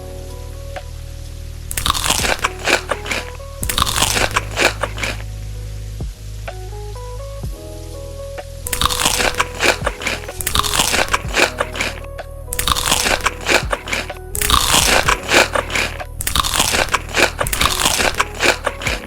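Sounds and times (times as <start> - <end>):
background music: 0.0 - 19.0
crunching of crisp food chewed: 1.7 - 5.2, 8.7 - 19.0.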